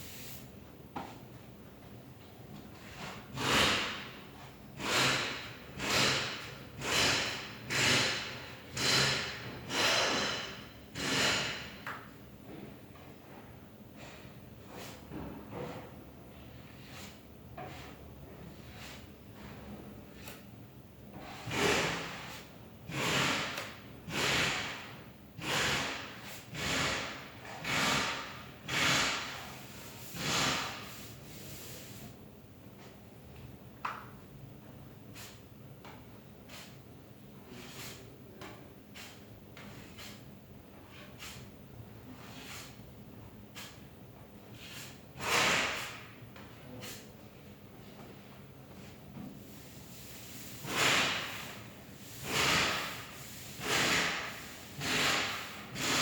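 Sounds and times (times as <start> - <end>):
spreader scraping filler on panel: 15.6 - 19.5, 42.1 - 42.8.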